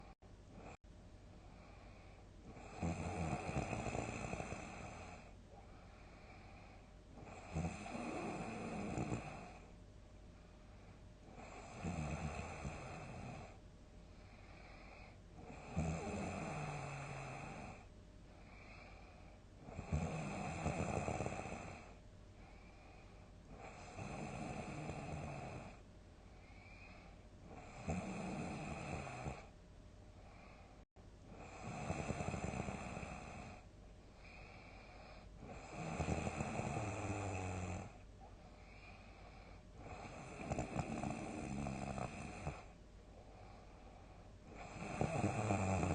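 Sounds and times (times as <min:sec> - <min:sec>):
person snoring with snorts: 0:02.5 - 0:05.3, 0:07.2 - 0:09.6, 0:11.4 - 0:13.6, 0:15.4 - 0:17.8, 0:19.6 - 0:22.0, 0:35.4 - 0:38.0, 0:39.8 - 0:42.7, 0:44.5 - 0:45.9.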